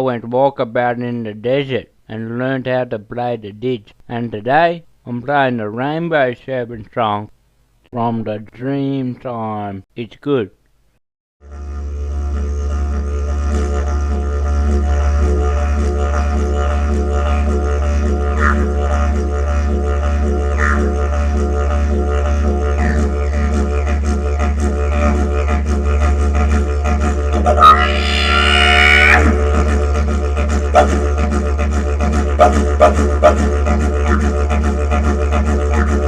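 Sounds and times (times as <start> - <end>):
didgeridoo pulsing drone: 11.4 - 36.0
high bending didgeridoo call: 11.4 - 36.0.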